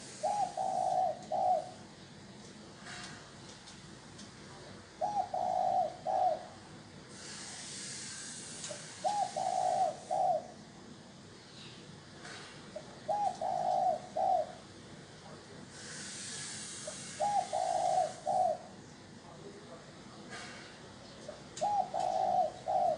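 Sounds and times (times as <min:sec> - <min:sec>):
dove cooing: 0:00.0 - 0:02.1, 0:04.9 - 0:07.4, 0:08.7 - 0:10.6, 0:12.7 - 0:14.8, 0:16.7 - 0:18.8, 0:21.3 - 0:22.9.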